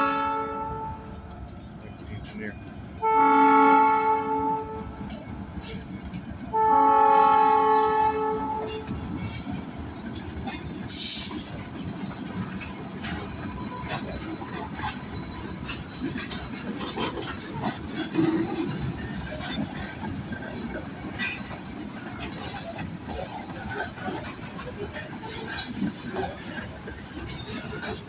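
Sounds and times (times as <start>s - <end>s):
train air horn blasts: 0.0s - 1.0s, 3.0s - 4.9s, 6.5s - 8.9s
train wheels clacking and clanking: 0.0s - 28.0s.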